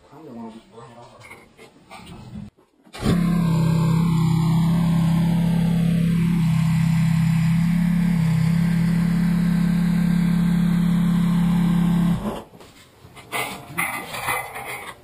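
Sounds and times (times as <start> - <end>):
tractor engine running: 3.0 - 12.3.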